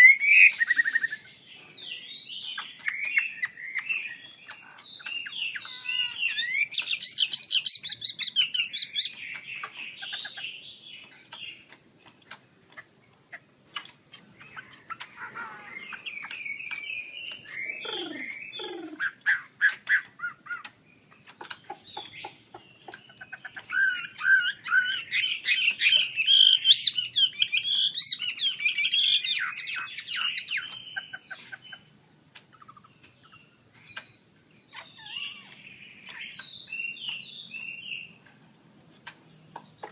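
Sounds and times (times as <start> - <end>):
sharp clicks: 2.3 - 15.2, 15.8 - 24.2, 33.8 - 39.9
bird singing whistled phrases: 15.2 - 19.4.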